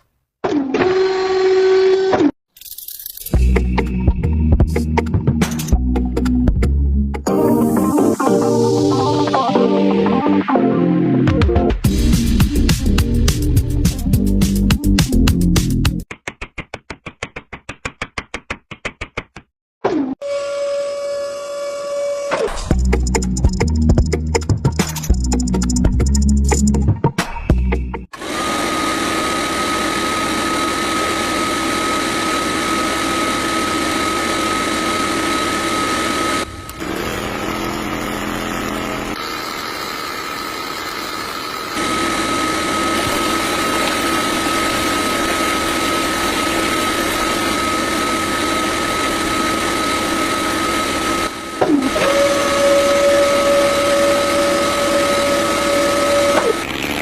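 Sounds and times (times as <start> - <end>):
small electric motor whine: 28.2 - 56.7
lower-pitched motor whine: 29.4 - 56.6.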